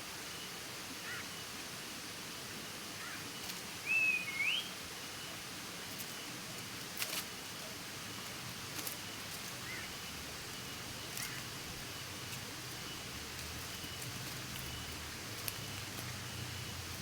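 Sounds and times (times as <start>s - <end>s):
steady hiss: 0.0s - 17.0s
faint bird chirps: 3.8s - 4.8s, 9.6s - 15.0s
rustles or crackles: 6.9s - 7.3s, 8.2s - 9.8s, 11.1s - 16.2s.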